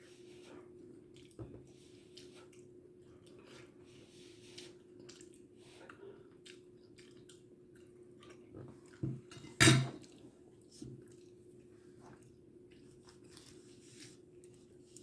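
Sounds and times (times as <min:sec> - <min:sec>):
dishes clattering: 0:09.3 - 0:10.0
cutlery and dishes clicking: 0:09.4 - 0:10.0.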